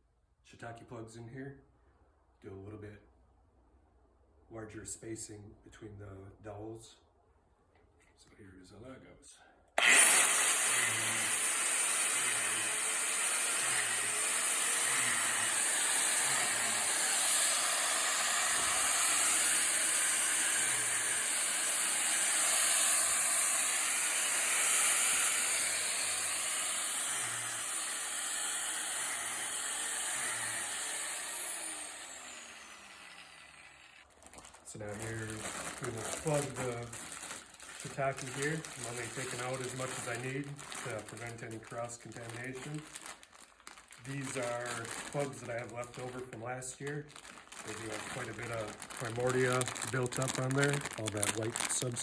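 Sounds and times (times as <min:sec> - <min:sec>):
drill bit boring into log: 0:09.8 - 0:34.0
motor winding down: 0:09.8 - 0:34.0.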